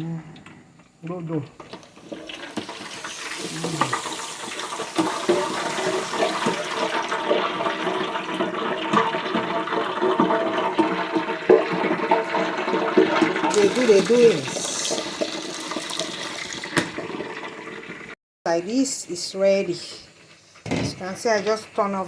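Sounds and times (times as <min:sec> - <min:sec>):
pot boiling and bubbling: 0:00.4 - 0:18.2, 0:19.0 - 0:22.0.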